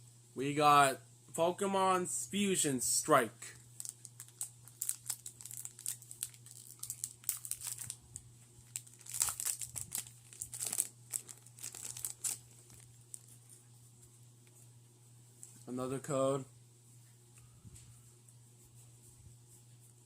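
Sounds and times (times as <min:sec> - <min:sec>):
foil wrapper crinkling and tearing: 0:03.7 - 0:13.5.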